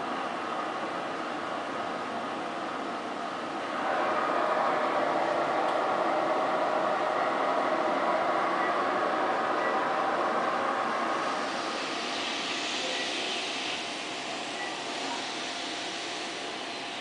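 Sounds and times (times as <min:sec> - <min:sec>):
steady rushing noise: 0:03.7 - 0:17.0.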